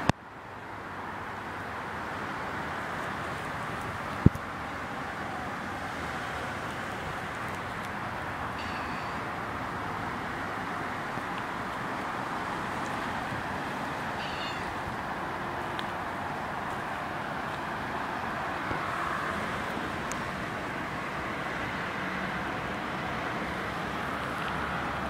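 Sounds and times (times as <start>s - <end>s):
steady background noise: 0.0s - 25.0s
cat meowing: 8.6s - 9.2s, 14.2s - 14.8s.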